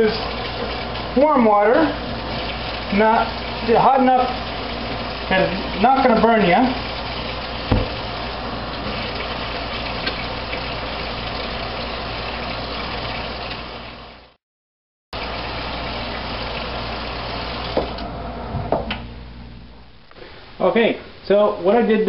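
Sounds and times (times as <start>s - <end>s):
knocks of taps turning off: 0.0s - 14.0s, 15.2s - 19.0s
tap running into sink: 7.6s - 8.1s, 8.7s - 11.5s, 17.6s - 18.0s.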